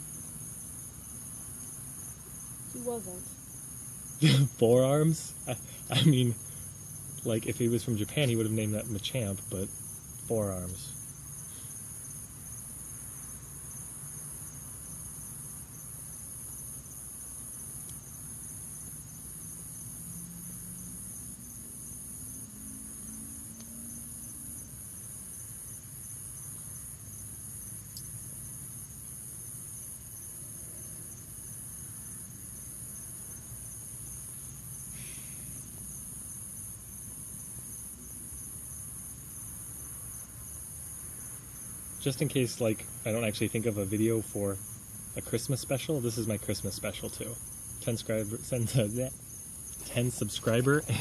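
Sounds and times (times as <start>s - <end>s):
high-pitched insect chorus: 0.0s - 51.0s
faint low hum: 4.2s - 11.7s, 42.0s - 51.0s
faint ticks: 17.8s - 18.0s, 23.5s - 23.8s, 27.9s - 28.2s.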